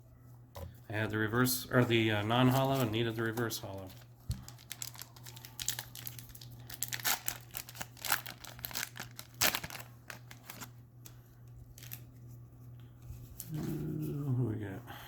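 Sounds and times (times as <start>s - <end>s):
foil wrapper crinkling: 2.3s - 12.2s
foil wrapper tearing: 2.6s - 10.8s, 11.7s - 12.1s.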